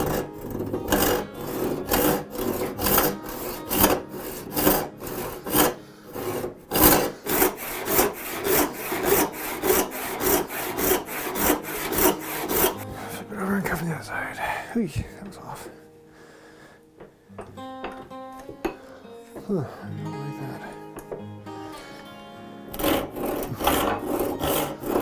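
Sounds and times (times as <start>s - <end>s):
hand saw cutting wood: 0.0s - 12.9s, 22.7s - 25.0s.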